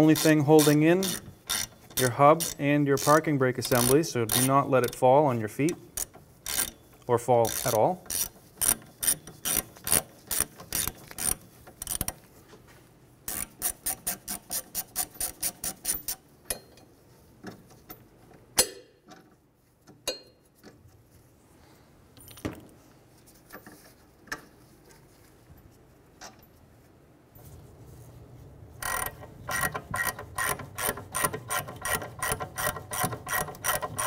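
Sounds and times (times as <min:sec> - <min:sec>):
hand ratchet clicking: 0:00.0 - 0:05.0, 0:05.6 - 0:12.2, 0:13.3 - 0:16.7, 0:28.8 - 0:34.0.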